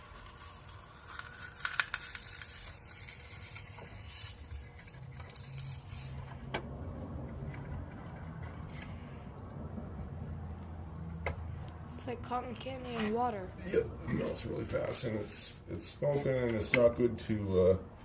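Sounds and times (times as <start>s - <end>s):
faint scraping and crackling: 0.0s - 9.5s.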